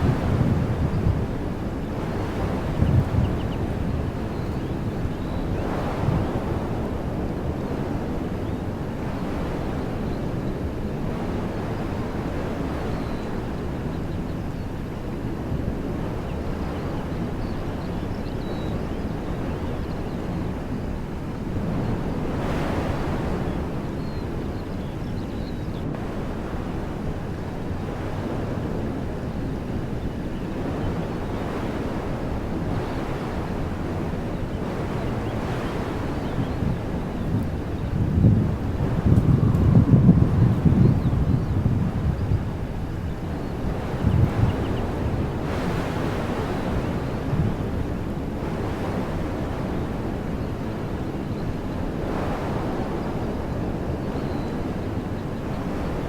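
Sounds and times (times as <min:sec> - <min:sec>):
wind buffeting microphone: 0:00.0 - 0:56.0
wind through trees: 0:00.0 - 0:56.0.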